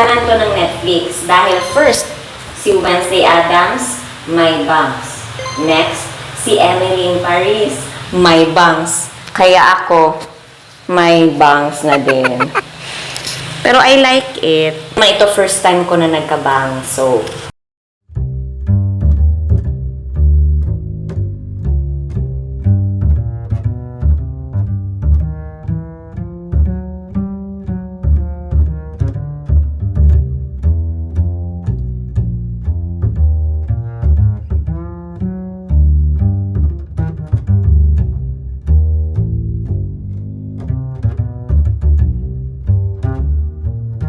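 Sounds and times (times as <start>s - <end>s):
cello and double bass music: 0.0s - 2.7s, 5.3s - 7.2s, 18.1s - 44.0s.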